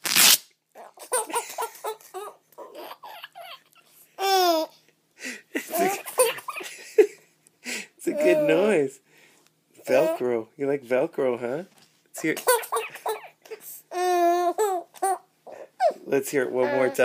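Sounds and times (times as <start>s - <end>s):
velcro strap ripping: 0.0s - 0.5s
baby laughing: 0.8s - 4.8s, 5.6s - 6.7s, 8.1s - 8.8s, 12.4s - 17.0s.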